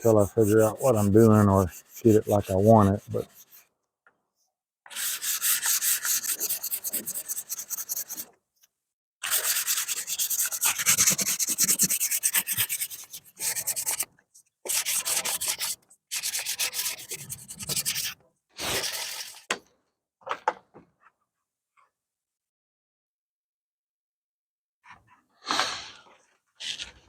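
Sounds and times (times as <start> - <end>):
sandpaper rubbing filler: 0.0 - 3.7, 4.9 - 8.3, 9.2 - 14.1, 14.7 - 19.5.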